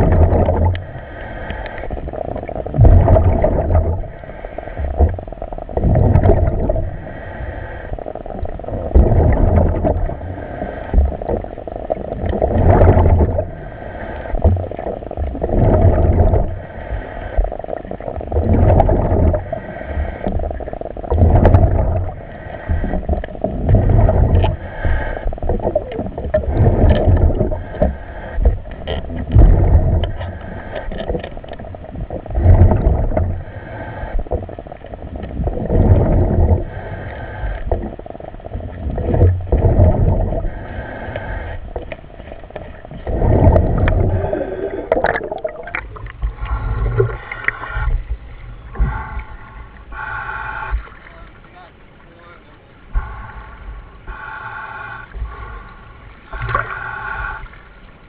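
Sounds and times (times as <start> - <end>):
bubbles gurgling: 0.0 - 1.0, 1.8 - 7.1, 7.9 - 16.7, 17.3 - 40.7, 41.5 - 49.2
diver breathing underwater: 0.0 - 51.0, 52.9 - 57.8
steady hiss: 0.7 - 2.6, 6.8 - 8.7, 36.5 - 38.8.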